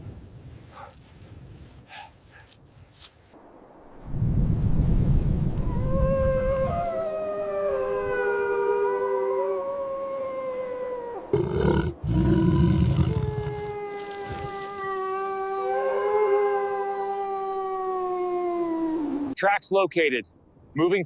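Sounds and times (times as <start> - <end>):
dogs howling: 5.7 - 19.4.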